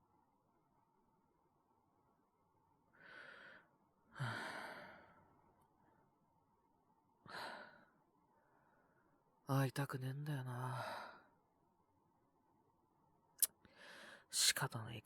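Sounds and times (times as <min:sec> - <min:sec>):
man breathing in: 0:13.7 - 0:14.2.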